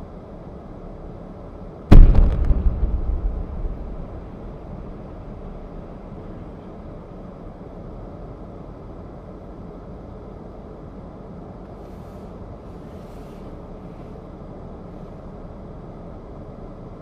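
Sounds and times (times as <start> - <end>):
steady low background hum: 0.0 - 17.0
sharp cracks: 1.9 - 6.1
loud explosion blast: 1.9 - 6.3
low rumble: 1.9 - 7.0.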